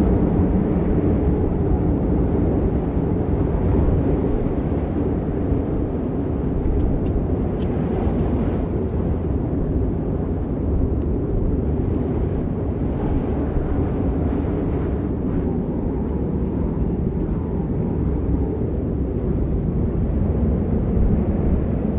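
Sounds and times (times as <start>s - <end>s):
low rumble of storm wind: 0.0s - 21.9s.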